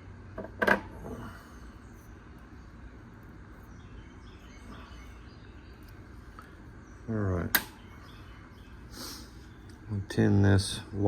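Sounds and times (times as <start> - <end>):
steady low background noise: 0.0 - 11.0
faint bird chirps: 1.4 - 9.9.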